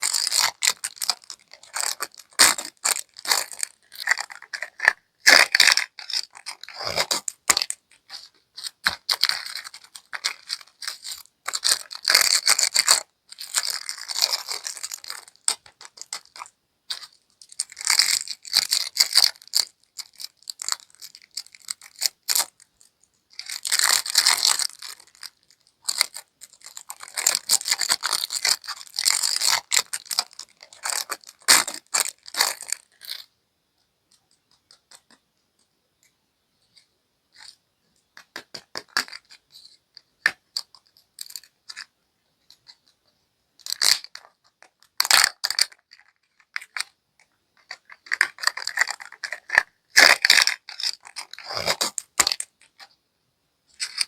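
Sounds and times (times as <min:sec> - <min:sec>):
plastic wrappers crinkling: 0:00.0 - 0:33.3, 0:43.6 - 0:52.9.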